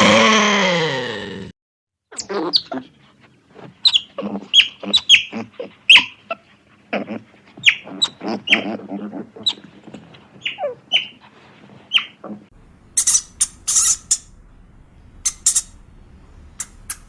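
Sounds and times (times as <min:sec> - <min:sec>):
loud long animal call: 0:00.0 - 0:01.5
birds chirping: 0:15.2 - 0:17.0.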